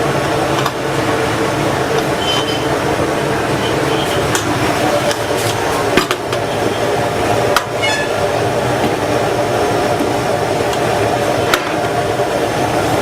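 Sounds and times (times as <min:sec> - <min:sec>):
steady mechanical hum: 0:00.0 - 0:13.0.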